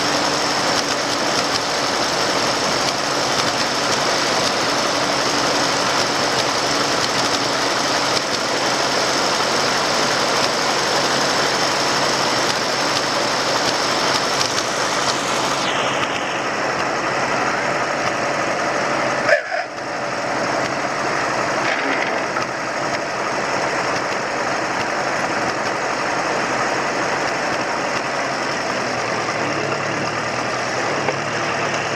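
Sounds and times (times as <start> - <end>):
tractor engine running: 0.0 - 31.9.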